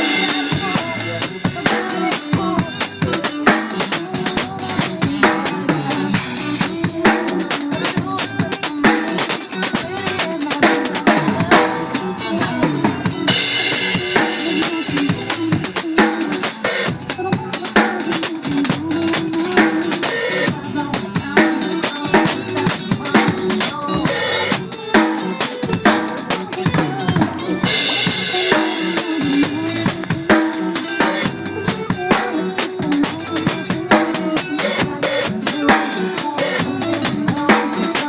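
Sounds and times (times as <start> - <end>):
drum kit playing: 0.0 - 38.0.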